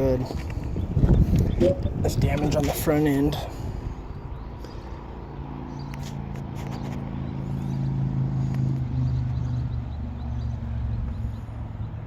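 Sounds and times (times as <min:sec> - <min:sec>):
vehicle engine running: 0:03.5 - 0:12.0.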